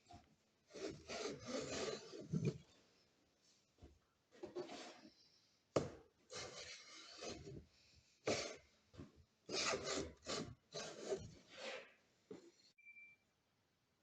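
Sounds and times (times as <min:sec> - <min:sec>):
hand tool scraping wood: 0:00.7 - 0:02.6, 0:06.3 - 0:07.6, 0:08.2 - 0:08.6, 0:09.5 - 0:11.9.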